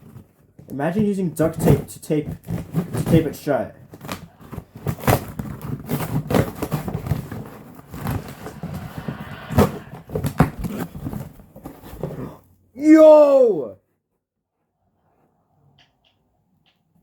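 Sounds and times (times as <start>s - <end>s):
cardboard box being unpacked: 1.4s - 9.0s, 9.6s - 12.4s.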